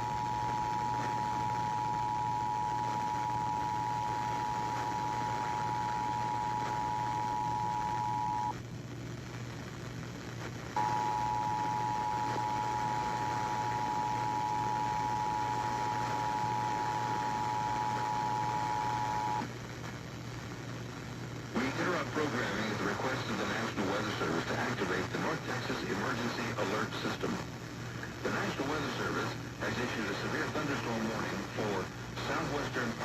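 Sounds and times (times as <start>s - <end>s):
hiss and low hum: 0.0s - 33.0s.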